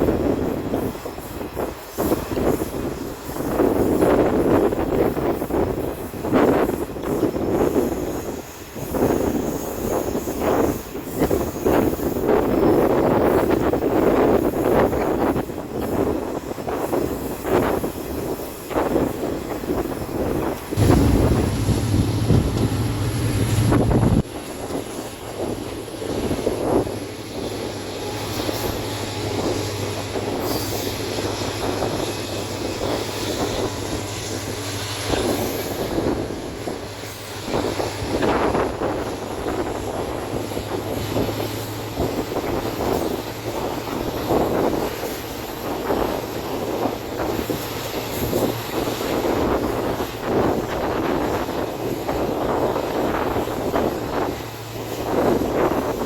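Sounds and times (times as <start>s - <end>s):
train rolling rumble: 0.0s - 56.0s
track knocks: 20.4s - 41.2s
low hum: 20.8s - 24.3s.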